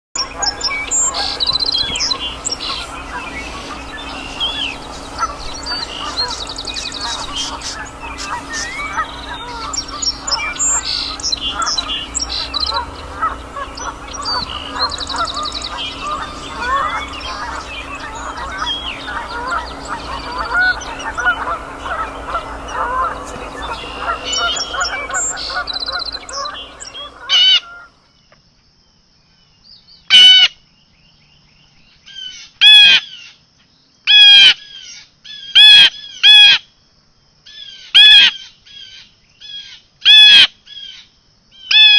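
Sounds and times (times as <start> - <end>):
flock of birds calling: 0.2 - 28.0
loud single bird calls: 0.3 - 27.9.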